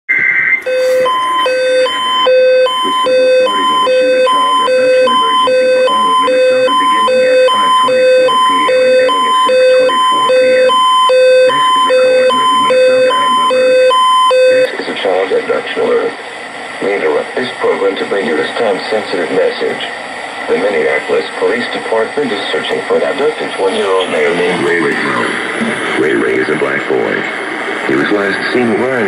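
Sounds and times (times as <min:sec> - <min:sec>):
alternating alert tones: 0:00.6 - 0:14.7
faint radio static: 0:00.6 - 0:29.0.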